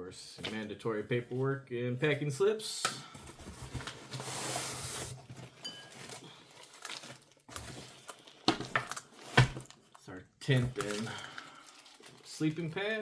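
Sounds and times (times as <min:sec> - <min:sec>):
paper and packaging rustling: 0:03.2 - 0:13.0.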